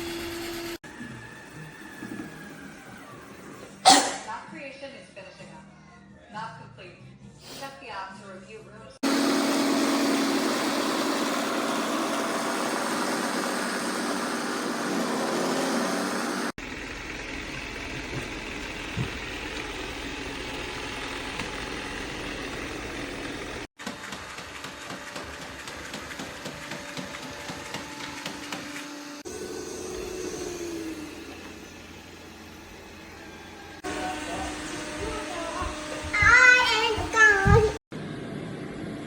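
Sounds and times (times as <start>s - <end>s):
robot vacuum motor whirring: 29.3s - 36.3s.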